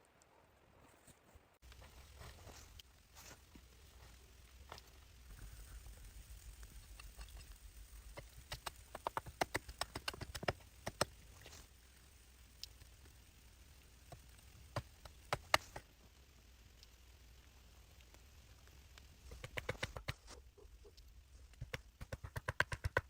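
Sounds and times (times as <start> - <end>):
sharp taps and knocks: 8.1 - 11.2, 14.1 - 15.8, 19.3 - 23.0.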